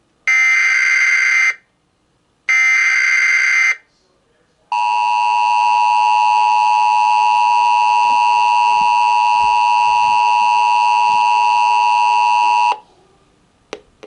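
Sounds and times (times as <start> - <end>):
two-tone alarm: 2.5 - 3.8, 4.7 - 12.8.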